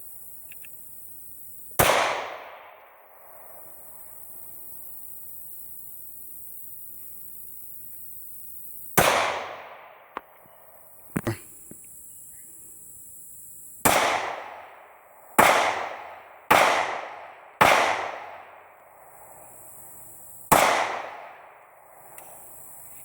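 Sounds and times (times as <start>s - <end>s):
gunshots with echo: 1.8s - 2.7s, 9.0s - 10.1s, 13.9s - 14.8s, 15.4s - 18.6s, 20.5s - 21.5s.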